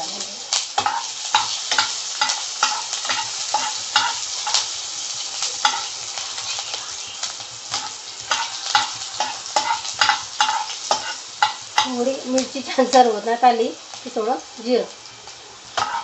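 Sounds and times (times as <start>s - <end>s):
vegetables sizzling in hot oil: 0.0s - 16.0s
spoon scraping a pan: 0.6s - 12.2s, 15.7s - 16.0s.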